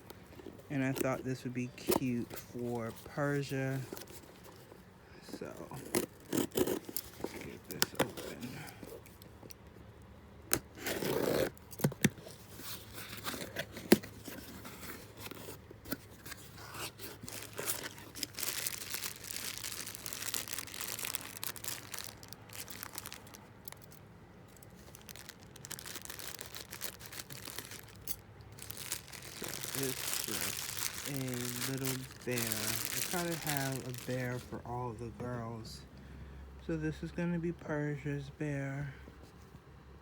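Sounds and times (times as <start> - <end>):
packaging tearing and crinkling: 5.4 - 9.2, 10.5 - 34.6.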